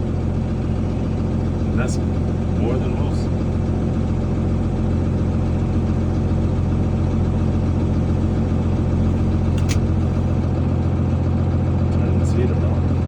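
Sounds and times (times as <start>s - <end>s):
engine idling with low drone: 0.0s - 13.0s
short sharp click: 9.6s - 9.8s.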